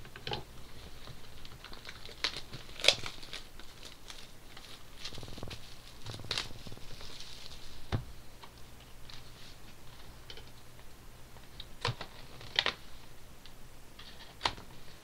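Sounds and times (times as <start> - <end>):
wrapping crinkling and tearing: 0.7 - 7.9
cardboard rustling: 0.7 - 8.2.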